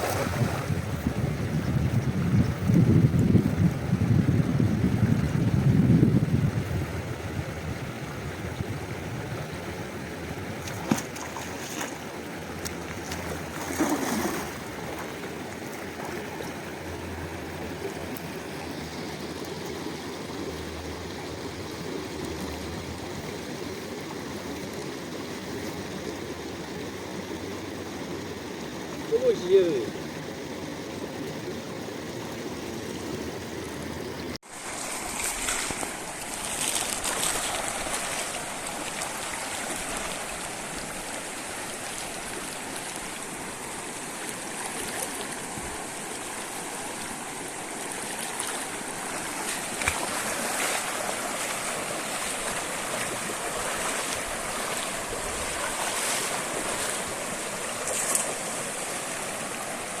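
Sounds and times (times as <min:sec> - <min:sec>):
river water rushing: 0:00.0 - 0:01.2, 0:06.8 - 1:00.0.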